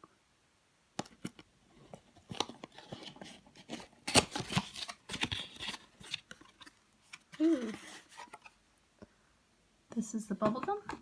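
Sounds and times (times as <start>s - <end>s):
cardboard box cut and torn: 2.4s - 6.3s.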